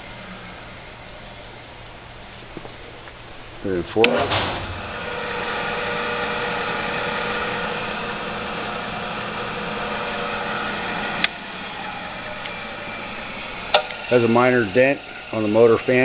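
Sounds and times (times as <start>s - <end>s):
drill press motor humming: 4.0s - 16.0s.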